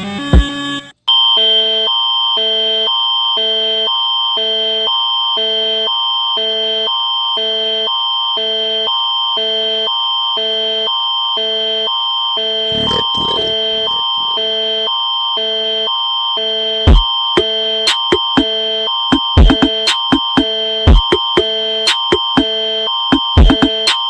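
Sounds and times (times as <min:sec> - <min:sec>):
music: 0:00.0 - 0:00.9, 0:16.9 - 0:24.0
emergency alert alarm tone: 0:01.1 - 0:24.0.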